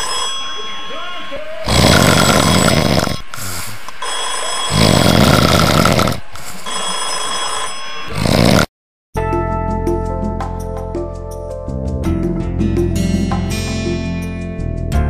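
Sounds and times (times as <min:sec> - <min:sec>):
steady high tones: 0:00.0 - 0:08.2
person snoring: 0:01.6 - 0:03.8, 0:04.6 - 0:08.7
music: 0:09.2 - 0:15.0.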